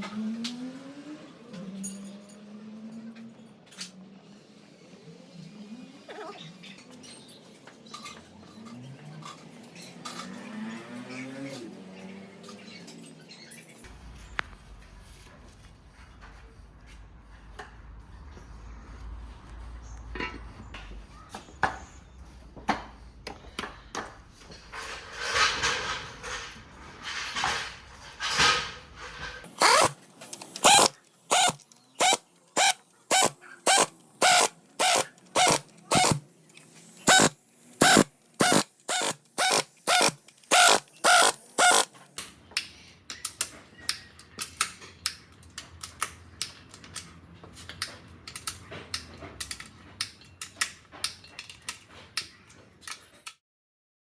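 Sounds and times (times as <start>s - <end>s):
sharp mechanical clicks: 29.4s - 42.3s.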